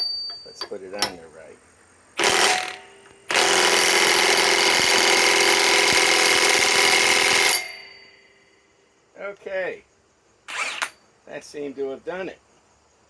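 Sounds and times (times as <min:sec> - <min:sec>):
impact wrench hammering: 0:00.0 - 0:01.2, 0:02.2 - 0:08.3.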